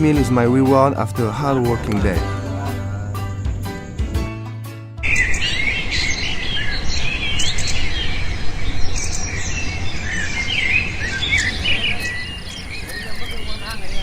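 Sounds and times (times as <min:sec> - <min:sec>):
small birds chirping: 0:05.0 - 0:14.0.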